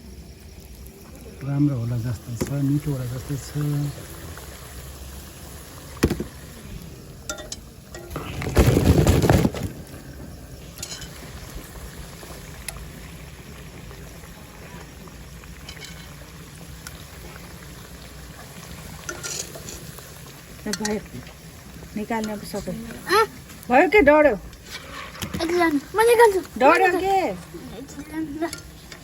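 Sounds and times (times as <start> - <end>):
batter sizzling in hot oil: 0.0 - 29.0
burst of noise: 8.1 - 10.7.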